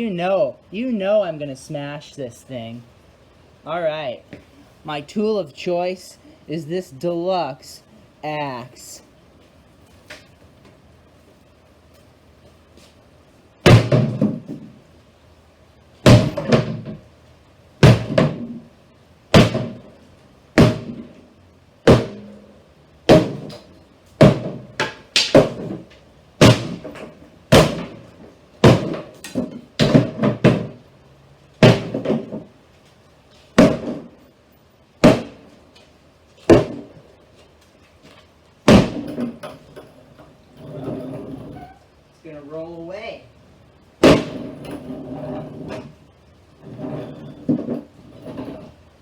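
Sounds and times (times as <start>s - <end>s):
axe striking wooden cabinet: 13.6s - 14.6s, 16.0s - 17.0s, 17.8s - 18.6s, 19.4s - 19.8s, 20.6s - 21.2s, 21.9s - 22.3s, 23.1s - 23.6s, 24.2s - 25.8s, 26.4s - 28.0s, 28.6s - 30.8s, 31.6s - 32.5s, 33.6s - 34.1s, 35.0s - 35.4s, 36.5s - 36.9s, 38.7s - 39.4s, 44.0s - 44.5s.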